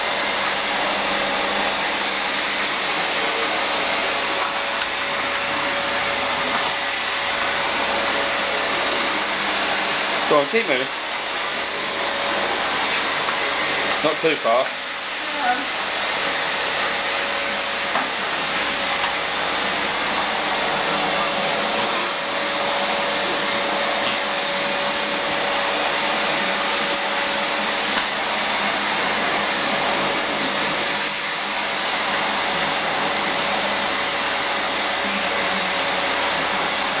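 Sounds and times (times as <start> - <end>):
vacuum cleaner running: 0.0 - 37.0.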